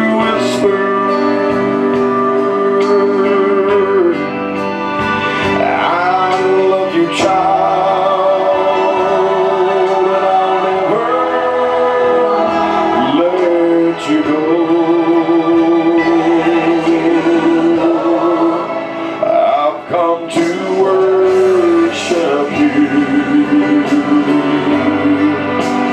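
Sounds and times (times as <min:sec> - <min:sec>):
gospel worship singing: 0:00.0 - 0:25.9.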